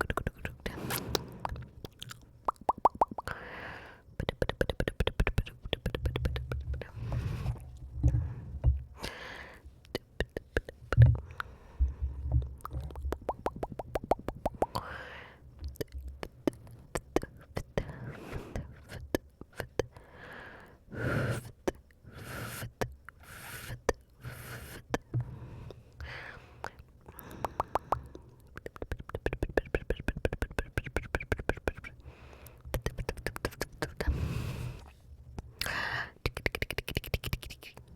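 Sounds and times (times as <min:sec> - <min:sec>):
tongue clicks and lip smacks: 0:00.0 - 0:03.4, 0:04.2 - 0:07.0, 0:09.8 - 0:11.5, 0:12.5 - 0:14.9, 0:15.6 - 0:17.9, 0:26.6 - 0:34.1, 0:35.4 - 0:37.9.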